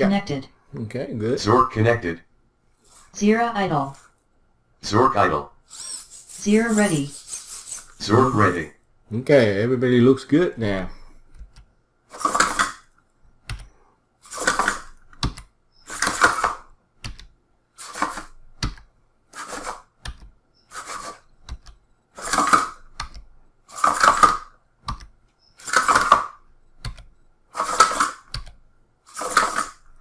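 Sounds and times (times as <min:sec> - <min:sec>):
servo whirring: 0:05.7 - 0:08.7
small clicks and taps: 0:11.3 - 0:11.7, 0:12.4 - 0:13.8, 0:15.0 - 0:15.5, 0:18.6 - 0:18.9, 0:20.0 - 0:20.4, 0:21.3 - 0:22.1, 0:22.8 - 0:23.3, 0:24.8 - 0:25.4, 0:26.1 - 0:27.3, 0:28.2 - 0:28.6
plastic clatter: 0:12.1 - 0:12.9, 0:14.3 - 0:16.6, 0:25.6 - 0:26.4, 0:27.6 - 0:28.3, 0:29.1 - 0:29.8.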